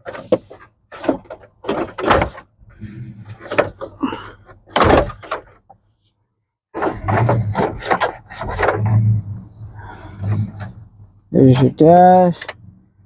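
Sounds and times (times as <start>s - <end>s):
plastic trim knocking and clattering: 0.0s - 2.4s, 4.7s - 5.5s.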